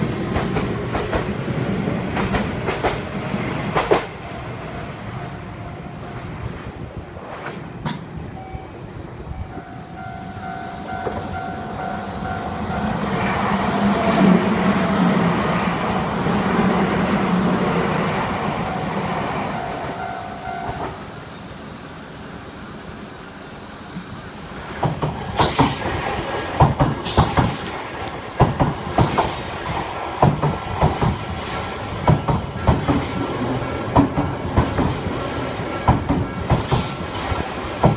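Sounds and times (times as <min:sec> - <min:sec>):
train rumble: 0:00.0 - 0:37.9
railroad crossing bell clanging: 0:08.4 - 0:13.4, 0:19.4 - 0:21.3.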